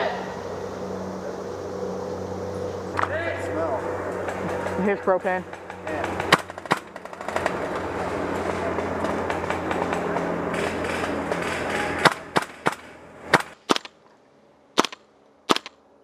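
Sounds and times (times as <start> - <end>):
airsoft gun shots: 11.4 - 14.0, 14.8 - 15.7.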